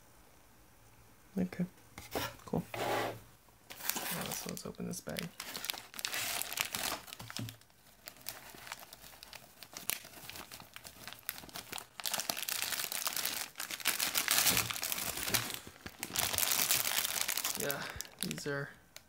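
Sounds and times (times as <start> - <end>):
bag crinkling and rustling: 3.7 - 18.5.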